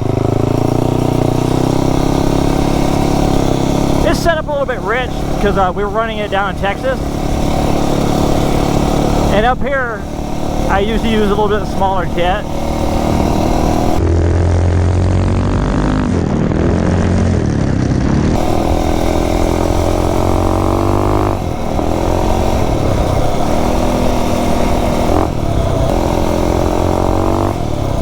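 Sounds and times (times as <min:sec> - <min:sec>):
small engine revving: 0:00.0 - 0:28.0.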